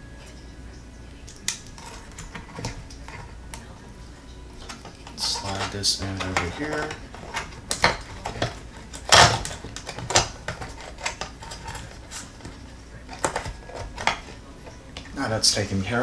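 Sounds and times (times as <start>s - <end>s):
hard plastic clicks and knocks: 4.6s - 15.1s.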